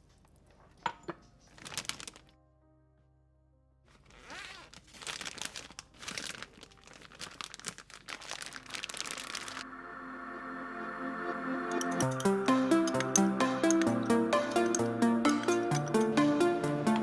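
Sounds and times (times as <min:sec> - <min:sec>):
crinkling packaging handling: 0:00.0 - 0:02.3, 0:03.9 - 0:09.6
background music: 0:08.8 - 0:17.0.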